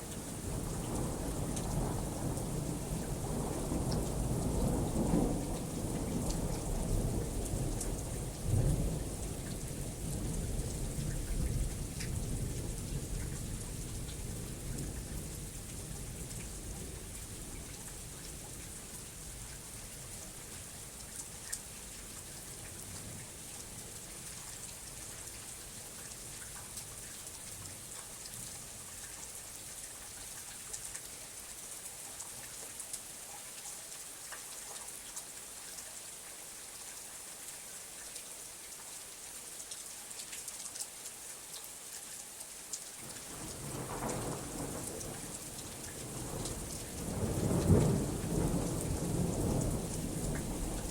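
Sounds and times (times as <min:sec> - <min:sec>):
rain drop clicks: 0:00.9 - 0:02.5, 0:10.2 - 0:12.2, 0:39.8 - 0:50.9
heavy rain hissing: 0:43.0 - 0:50.9
thunder rumbling: 0:46.0 - 0:50.9.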